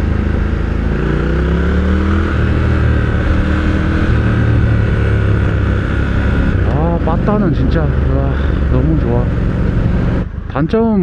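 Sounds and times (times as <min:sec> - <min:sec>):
motorcycle engine running: 0:00.0 - 0:11.0.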